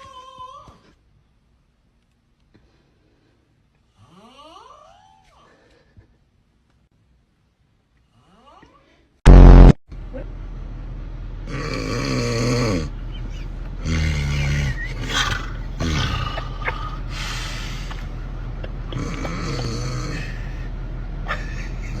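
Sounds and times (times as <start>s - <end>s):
person snoring loudly: 11.5s - 12.9s, 13.8s - 17.6s, 18.9s - 20.5s.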